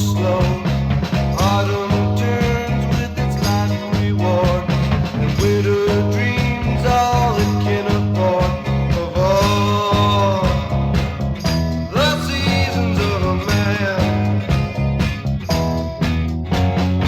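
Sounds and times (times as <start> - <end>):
bass line: 0.0 - 17.0
drums: 0.0 - 17.0.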